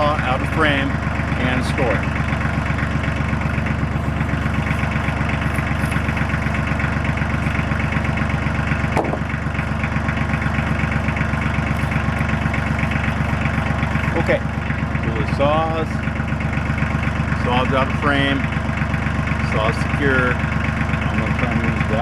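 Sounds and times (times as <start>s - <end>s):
tractor engine idling: 0.0s - 22.0s
short knock: 9.0s - 9.2s.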